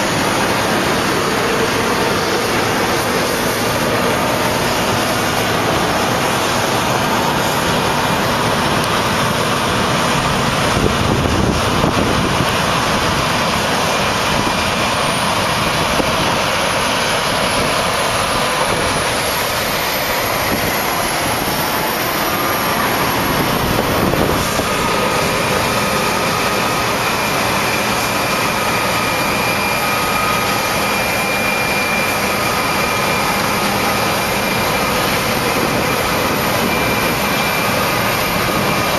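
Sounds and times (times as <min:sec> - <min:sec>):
combine harvester running: 0:00.0 - 0:38.9
thin whining tones: 0:00.0 - 0:38.9
faint high whistle: 0:25.7 - 0:38.9.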